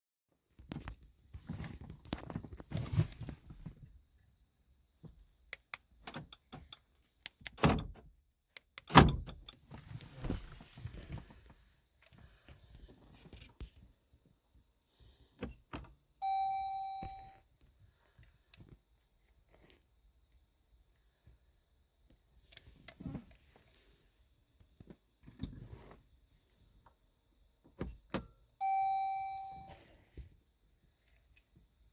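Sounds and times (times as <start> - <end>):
car keys jangling: 7.4 - 7.9, 16.2 - 17.3, 28.6 - 29.7
electronic beep: 16.2 - 17.3, 28.6 - 29.8.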